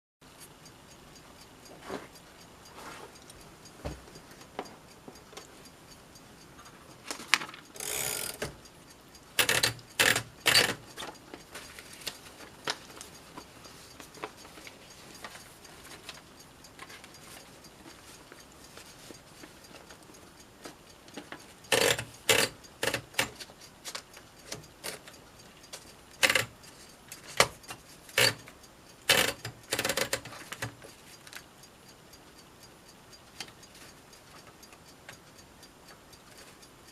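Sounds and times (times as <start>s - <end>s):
typewriter keys clacking: 9.4s - 10.8s, 21.8s - 23.4s, 26.2s - 26.5s, 28.2s - 28.4s, 29.1s - 30.8s
typewriter mechanism rattling: 9.4s - 10.8s, 21.7s - 23.4s, 26.2s - 26.5s, 28.2s - 28.4s, 29.1s - 30.7s.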